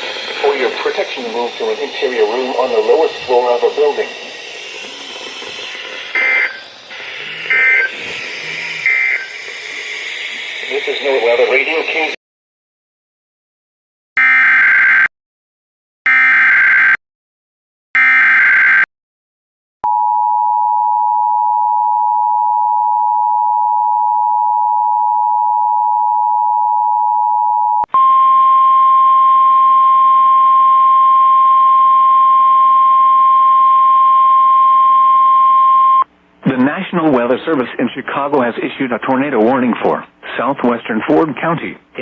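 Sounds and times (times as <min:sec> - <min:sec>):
radio hiss: 0:00.0 - 0:12.2, 0:36.4 - 0:42.0
warbling data header bursts: 0:00.0 - 0:12.2
steady alert tone: 0:00.1 - 0:12.0
two-tone attention signal: 0:05.0 - 0:09.4.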